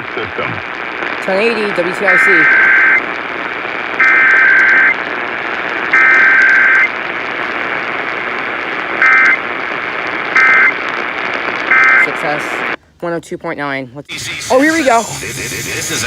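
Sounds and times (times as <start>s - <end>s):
radio static hiss: 0.0s - 12.8s, 14.1s - 16.0s
raspy buzzing data bursts: 0.6s - 7.1s, 8.9s - 9.5s, 10.3s - 10.8s, 14.1s - 16.0s.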